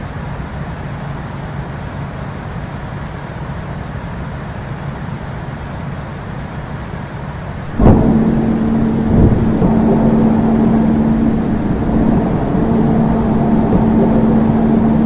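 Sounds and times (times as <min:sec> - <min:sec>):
low steady hum: 0:07.6 - 0:15.0
rushing engine noise: 0:07.7 - 0:15.0.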